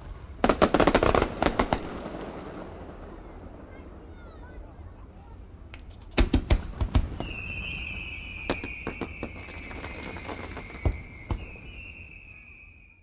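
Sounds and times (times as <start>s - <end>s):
firework cracks and bangs: 0.0s - 4.2s, 5.8s - 12.7s
firework whistle falling in pitch: 7.1s - 13.0s.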